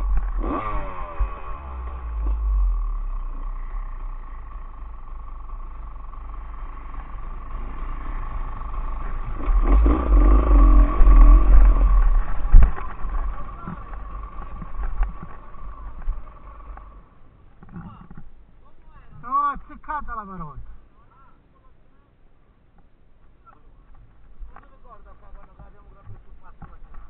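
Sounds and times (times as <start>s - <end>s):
motorcycle engine rumbling: 0.0s - 21.5s.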